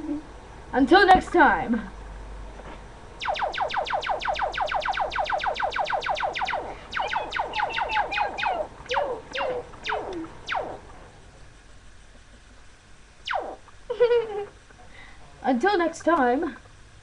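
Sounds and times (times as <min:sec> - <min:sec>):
electronic laser zaps: 0:03.2 - 0:11.1, 0:13.2 - 0:14.1.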